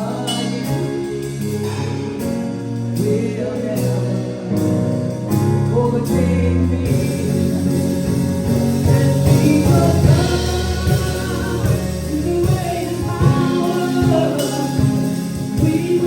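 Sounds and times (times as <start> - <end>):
bass: 0.0 - 16.0
gospel choir singing: 0.0 - 16.0
steady drum beat: 0.0 - 16.0.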